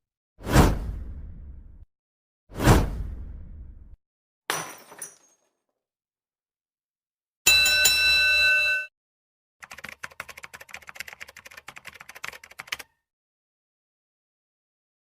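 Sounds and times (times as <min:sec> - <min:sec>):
bell-like ring: 0:07.5 - 0:08.9.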